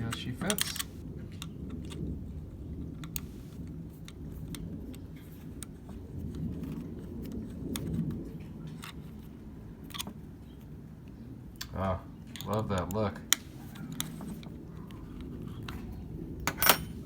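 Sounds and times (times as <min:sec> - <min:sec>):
low steady hum: 0:00.0 - 0:17.0
clicks and taps of metal tools: 0:11.6 - 0:13.4.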